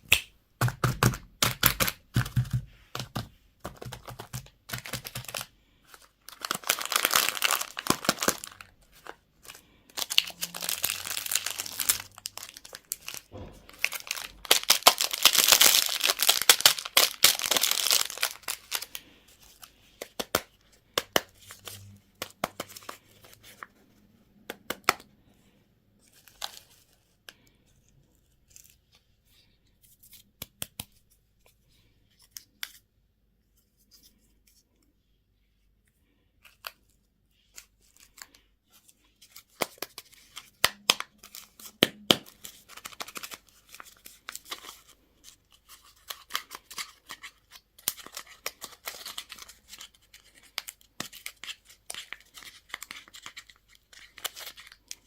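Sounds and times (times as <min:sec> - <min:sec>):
packaging tearing and crinkling: 0:03.8 - 0:19.0.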